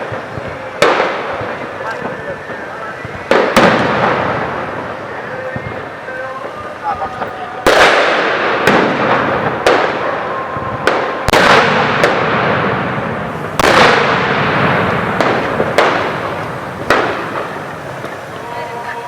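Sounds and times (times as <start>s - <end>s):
fireworks bangs with echo: 0.0s - 19.0s.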